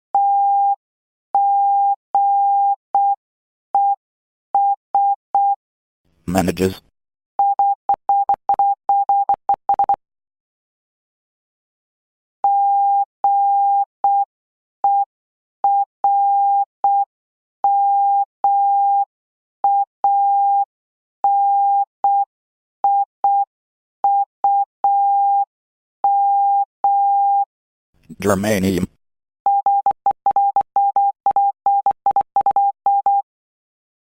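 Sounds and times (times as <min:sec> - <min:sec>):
morse code beeps: 0:29.5 - 0:33.2.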